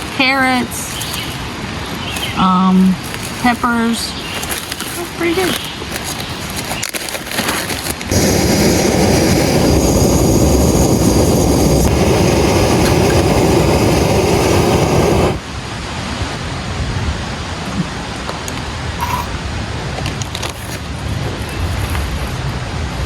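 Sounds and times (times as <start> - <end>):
stove burner hissing: 8.1 - 15.4.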